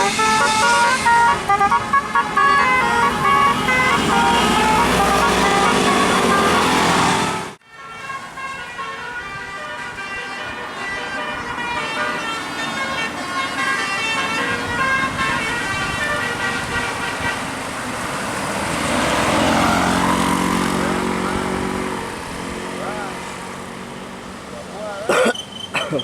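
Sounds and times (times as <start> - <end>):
multi-tone bus horn tune: 0.0 - 18.2.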